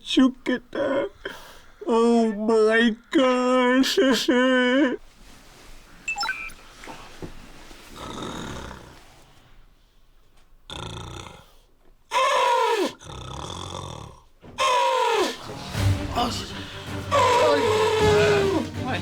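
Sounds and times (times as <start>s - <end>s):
rasping breaths: 0.9s - 3.4s, 10.7s - 18.8s
man snoring loudly: 16.6s - 18.5s.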